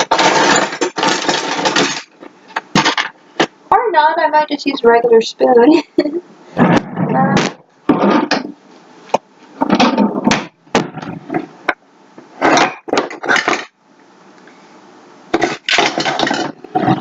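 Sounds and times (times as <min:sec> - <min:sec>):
kitchen utensils clattering: 0:00.0 - 0:02.2, 0:12.4 - 0:13.7, 0:15.4 - 0:17.0.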